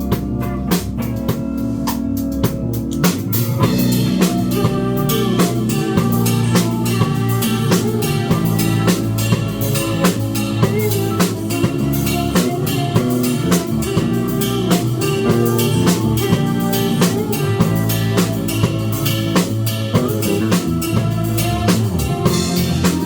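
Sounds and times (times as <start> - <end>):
drum kit beat: 0.0 - 23.0
live band playing: 0.0 - 23.0.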